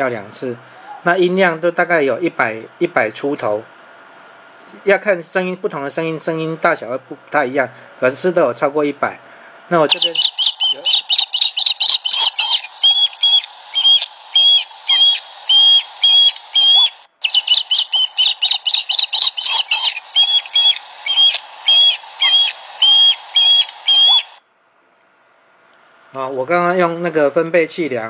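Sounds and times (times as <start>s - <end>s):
bird chirping through small speaker: 9.8s - 24.4s.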